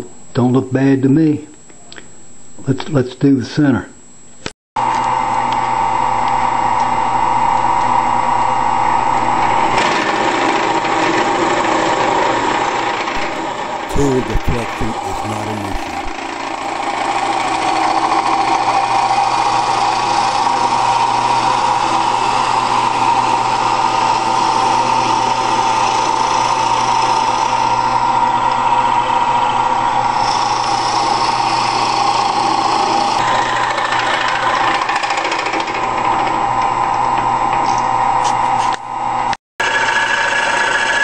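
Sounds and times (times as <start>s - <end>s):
lathe cutting noise: 30.0s - 36.2s.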